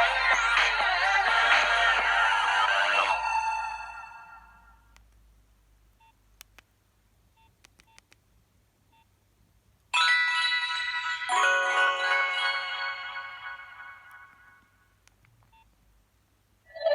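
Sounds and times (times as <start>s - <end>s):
phone ringtone: 0.0s - 4.7s, 10.0s - 14.7s.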